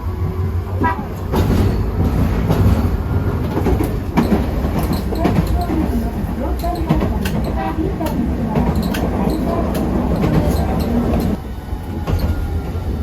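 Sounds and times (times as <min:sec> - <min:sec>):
tram running: 0:00.0 - 0:13.0
wheels knocking on track: 0:00.8 - 0:11.4.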